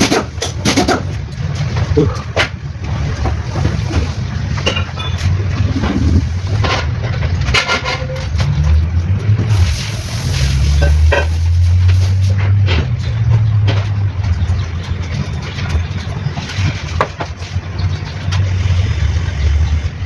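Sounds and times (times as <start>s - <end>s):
diesel engine rumbling: 0.0s - 20.0s
sharp engine knocks: 10.7s - 18.5s.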